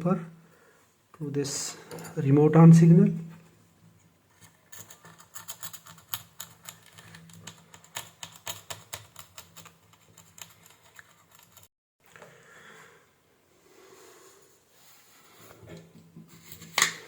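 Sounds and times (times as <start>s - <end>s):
small metal tools clicking: 4.7s - 11.7s.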